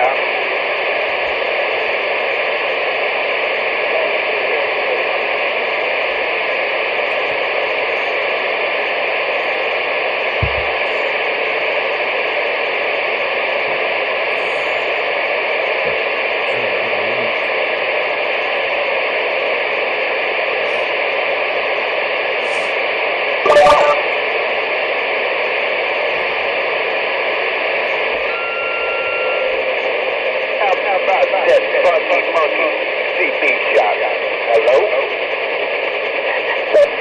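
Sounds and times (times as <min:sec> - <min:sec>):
radio static hiss: 0:00.0 - 0:37.0
low thump: 0:10.4 - 0:10.8.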